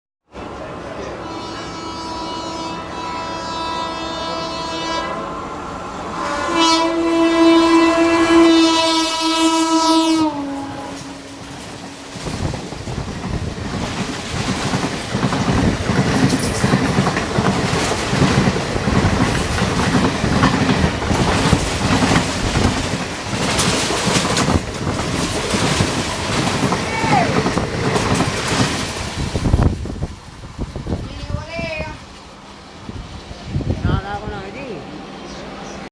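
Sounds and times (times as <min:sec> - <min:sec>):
train coaches rumbling: 0:00.3 - 0:35.9
locomotive horn: 0:01.0 - 0:12.1
wheels clacking over rail joints: 0:10.8 - 0:30.3.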